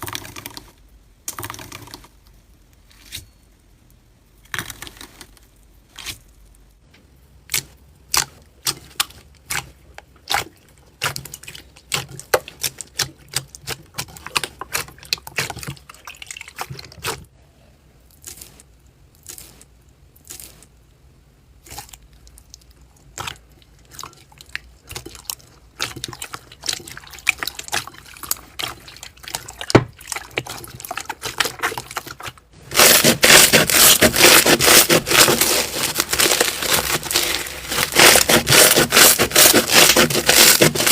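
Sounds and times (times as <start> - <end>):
slime crunching: 7.4 - 17.3, 18.0 - 20.8, 21.6 - 40.9.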